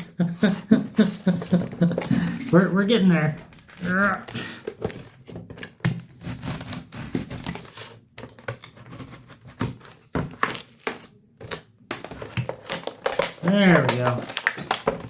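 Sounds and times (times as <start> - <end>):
knife cutting hard plastic packaging: 3.5 - 15.0.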